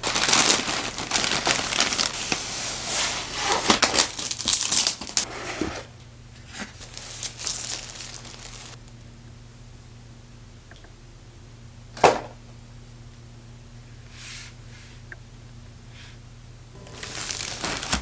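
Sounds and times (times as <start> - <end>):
packaging crinkling and rustling: 0.0 - 5.3, 6.6 - 8.8, 16.8 - 18.0.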